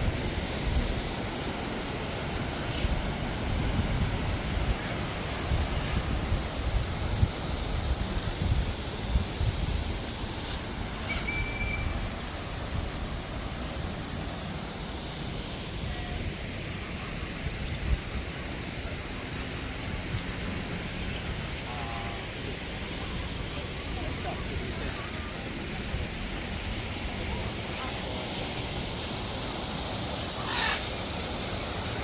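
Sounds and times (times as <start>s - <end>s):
bird warbling call: 10.4s - 12.0s, 30.2s - 31.1s
bird whistle: 11.0s - 12.0s.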